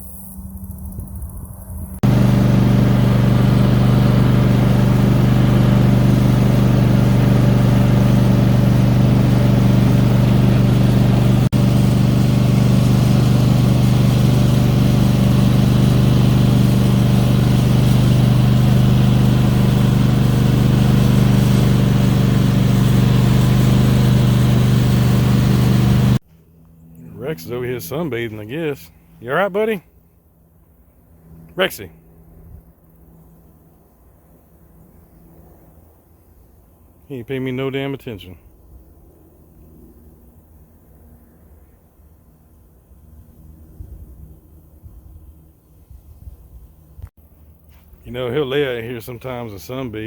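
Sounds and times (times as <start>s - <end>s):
engine running steadily: 1.8s - 50.0s.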